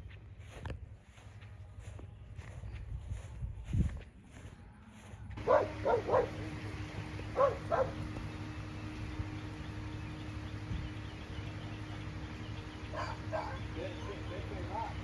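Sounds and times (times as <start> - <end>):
steady low hum: 5.0 - 15.0
dog barking: 5.4 - 6.6, 7.3 - 8.1, 12.9 - 13.8.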